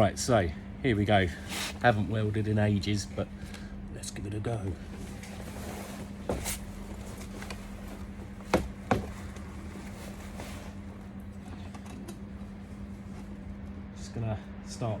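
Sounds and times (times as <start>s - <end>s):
sharp knocks: 8.4s - 9.4s.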